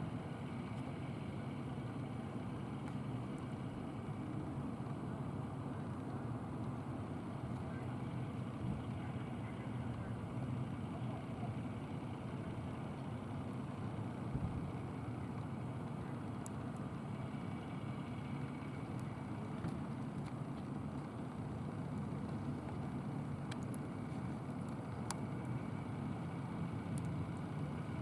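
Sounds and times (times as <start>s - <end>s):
engine idling: 0.0s - 28.0s
faint clicks: 16.2s - 27.7s.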